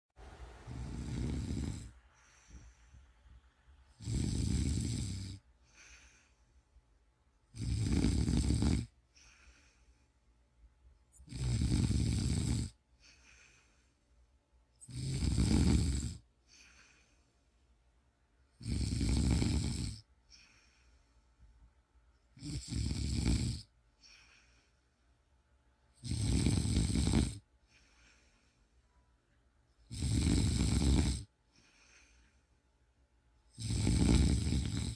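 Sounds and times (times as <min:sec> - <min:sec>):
faint breathing: 0:00.2 - 0:07.5, 0:08.5 - 0:11.2, 0:12.7 - 0:14.4, 0:16.2 - 0:17.9, 0:20.0 - 0:22.4, 0:23.6 - 0:25.4, 0:27.4 - 0:29.1, 0:29.7 - 0:32.8
cat snoring: 0:00.6 - 0:02.5, 0:03.9 - 0:06.0, 0:07.5 - 0:09.4, 0:11.2 - 0:12.8, 0:14.8 - 0:16.2, 0:18.6 - 0:20.0, 0:22.4 - 0:24.2, 0:26.0 - 0:27.5, 0:29.8 - 0:31.3, 0:33.5 - 0:34.9.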